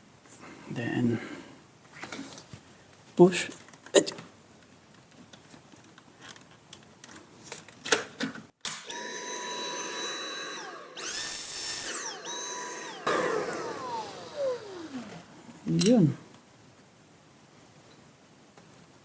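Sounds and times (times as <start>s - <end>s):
cordless vacuum motor whine: 8.8s - 15.8s.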